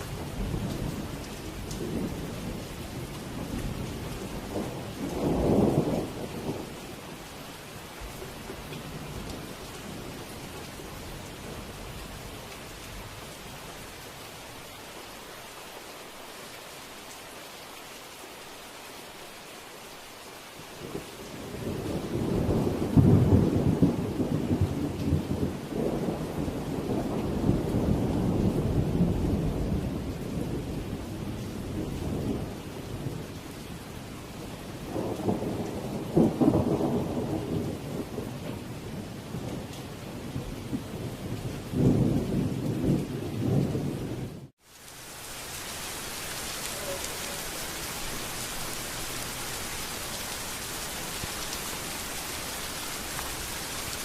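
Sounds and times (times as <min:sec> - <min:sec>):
rolling thunder: 0:00.0 - 0:07.1, 0:20.8 - 0:33.4, 0:34.7 - 0:44.5
steady rain: 0:00.0 - 0:54.0.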